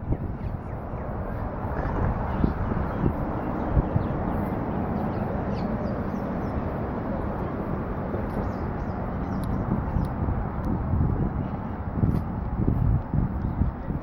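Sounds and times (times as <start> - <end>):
wind rumbling on microphone: 0.0 - 14.0.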